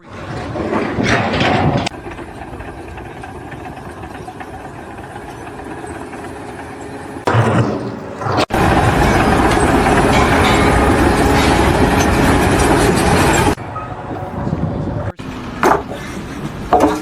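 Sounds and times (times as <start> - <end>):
engine idling: 1.9 - 7.3, 8.5 - 16.8.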